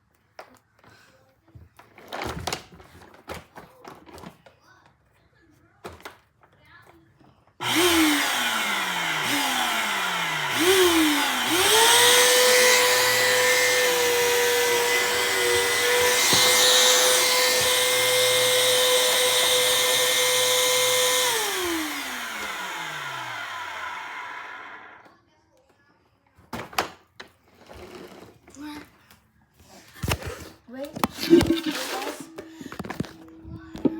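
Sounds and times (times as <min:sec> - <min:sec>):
vacuum cleaner motor whine: 0:07.6 - 0:25.1, 0:31.3 - 0:33.9.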